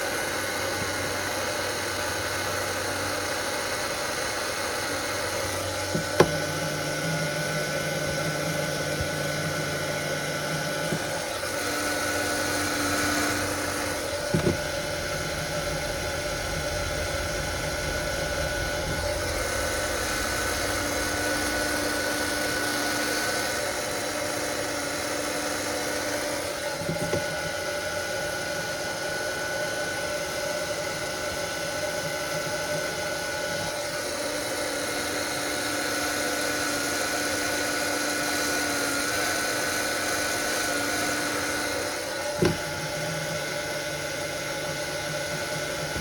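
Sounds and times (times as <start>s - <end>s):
electric motor humming: 0.0s - 27.6s.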